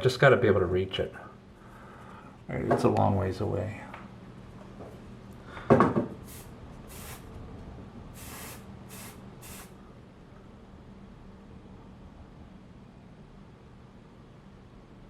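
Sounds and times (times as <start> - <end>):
aerosol spray hissing: 6.2 - 7.3, 8.2 - 9.8.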